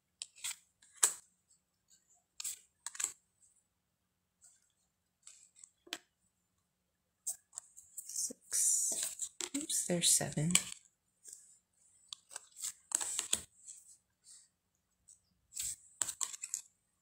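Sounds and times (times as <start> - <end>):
cards flipped and set down: 0.2 - 1.2, 2.4 - 3.2, 12.2 - 13.5, 15.5 - 16.7.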